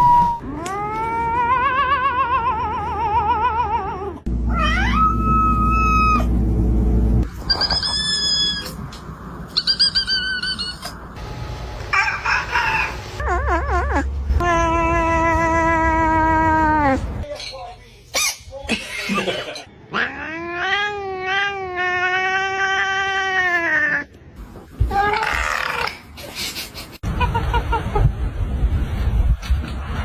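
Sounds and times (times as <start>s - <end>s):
cats meowing and yowling: 0.4s - 6.3s, 19.9s - 24.1s.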